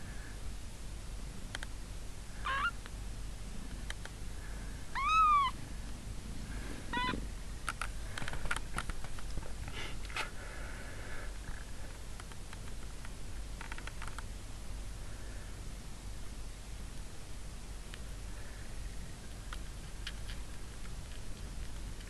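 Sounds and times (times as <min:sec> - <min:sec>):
kittens mewing: 0:02.4 - 0:02.8, 0:04.9 - 0:05.6, 0:06.8 - 0:07.3
light clicks and rustles: 0:07.0 - 0:10.4, 0:11.4 - 0:14.3.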